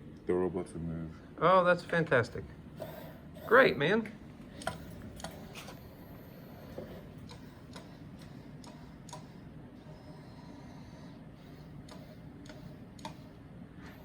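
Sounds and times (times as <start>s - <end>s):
robot motor clicks: 8.6s - 9.3s, 11.8s - 13.3s.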